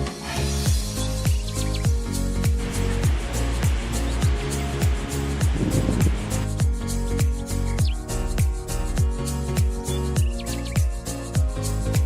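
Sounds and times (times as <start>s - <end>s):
deep kick drum: 0.8s - 9.2s.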